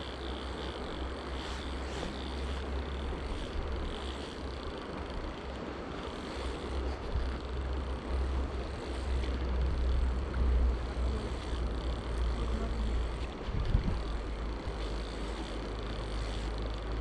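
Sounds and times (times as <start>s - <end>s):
wind buffeting microphone: 12.7s - 14.9s.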